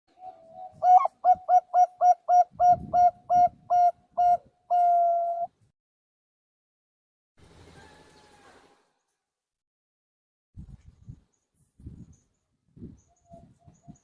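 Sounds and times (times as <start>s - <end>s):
dove cooing: 0.1s - 5.5s.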